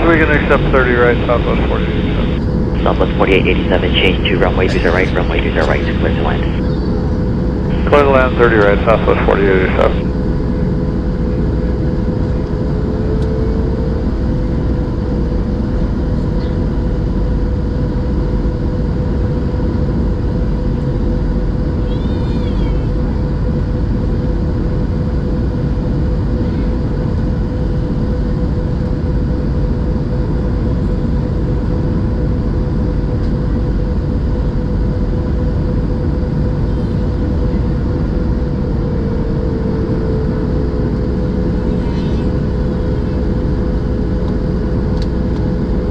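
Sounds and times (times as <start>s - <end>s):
aircraft cabin rumble: 0.0s - 45.9s
constant hum tone: 0.0s - 45.9s
faint warbling chirp: 21.8s - 22.9s, 41.6s - 43.2s.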